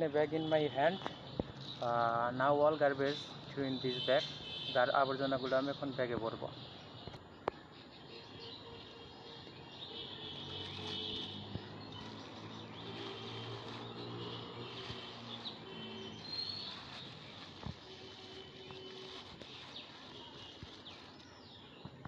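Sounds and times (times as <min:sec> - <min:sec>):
birds chirping and whistling: 0:07.7 - 0:22.0.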